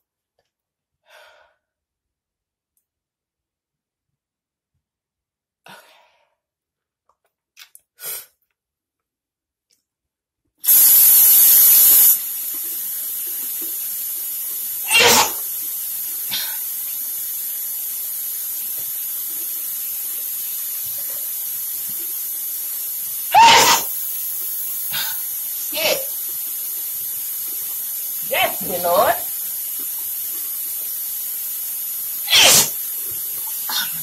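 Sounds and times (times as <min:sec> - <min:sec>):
running water hiss: 0:10.6 - 0:34.0
person sneezing: 0:14.8 - 0:15.5, 0:23.3 - 0:24.0, 0:24.9 - 0:26.2, 0:32.3 - 0:32.8, 0:33.7 - 0:34.0.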